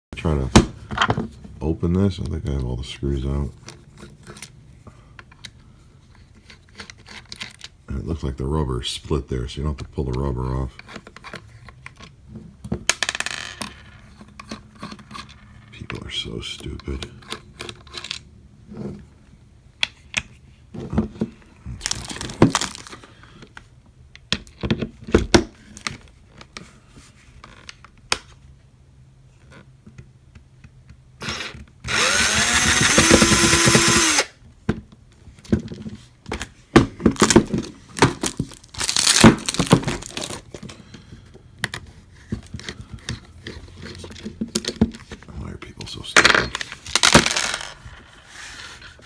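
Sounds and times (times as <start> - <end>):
plastic parts clicking and knocking: 21.0 - 23.6, 29.9 - 48.0
small power tool motor: 31.2 - 34.3.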